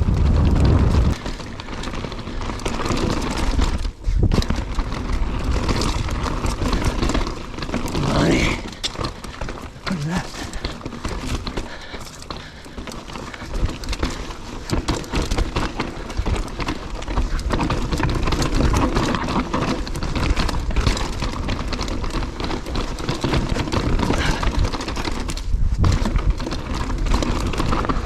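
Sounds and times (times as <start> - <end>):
steady rumble: 0.0 - 14.4
bike frame and chain rattling: 0.0 - 28.0
bike tyres clattering on rock: 0.0 - 28.0.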